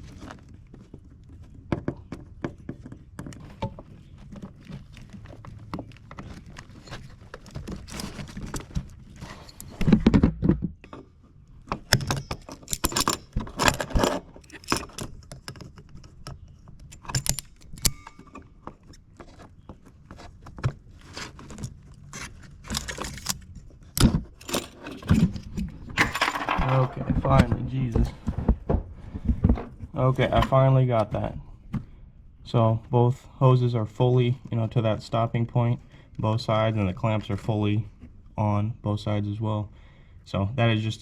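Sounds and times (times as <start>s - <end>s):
metal tools and clamps clinking: 11.9s - 15.7s, 16.8s - 18.5s, 22.6s - 23.5s, 24.4s - 27.1s.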